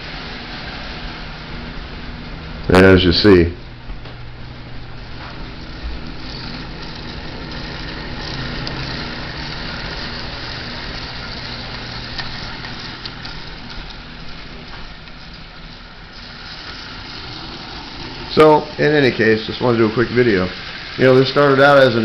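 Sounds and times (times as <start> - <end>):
wheels rolling on rails: 5.0 - 22.0
toy train motor hum: 5.4 - 22.0.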